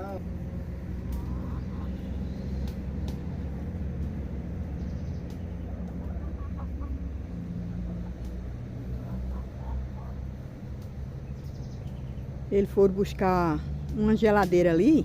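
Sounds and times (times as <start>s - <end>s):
low rumble: 0.0s - 15.0s
chickens clucking: 0.7s - 12.5s
faint clicks: 2.5s - 3.3s, 5.1s - 6.0s, 8.1s - 8.4s.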